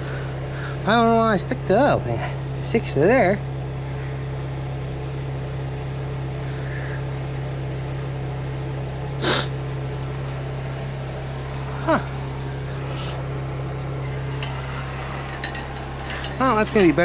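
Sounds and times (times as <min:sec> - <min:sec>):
engine humming: 0:00.0 - 0:17.0.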